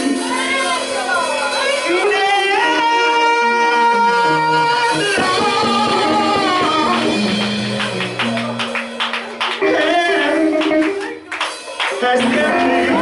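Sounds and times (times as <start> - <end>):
bass line: 0.0 - 9.0
person singing a long note: 1.8 - 7.2.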